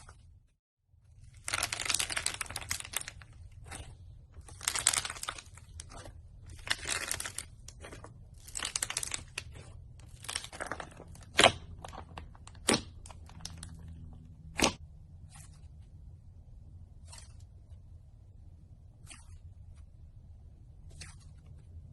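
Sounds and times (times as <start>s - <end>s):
slime squishing: 1.1s - 15.8s.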